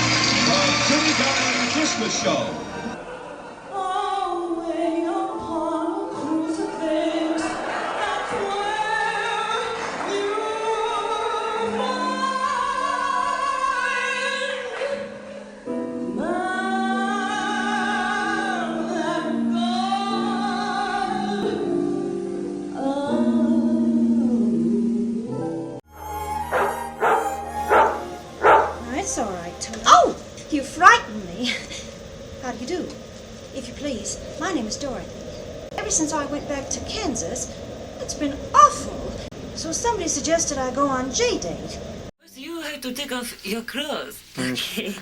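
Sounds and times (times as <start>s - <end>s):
sustained musical backing: 25.8s - 30.9s.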